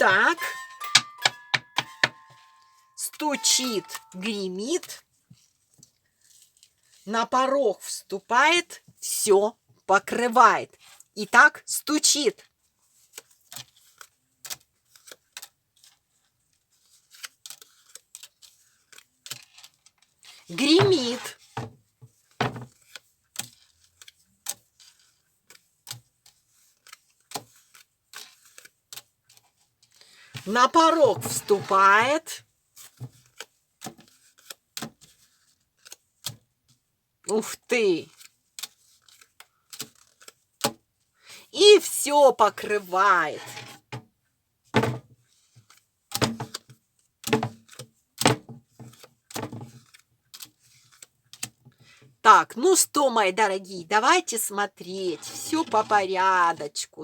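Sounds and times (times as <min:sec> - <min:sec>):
cards clicking and snapping: 0:26.5 - 0:29.1, 0:38.1 - 0:40.7.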